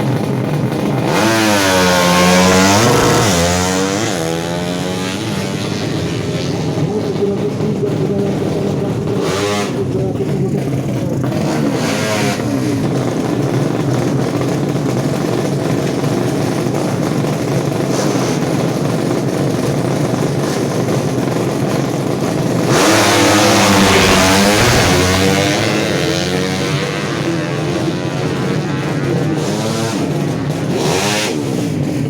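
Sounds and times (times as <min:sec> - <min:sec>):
motorcycle engines revving: 0:00.0 - 0:32.0
motorcycle passing by: 0:01.1 - 0:06.8, 0:22.6 - 0:31.8.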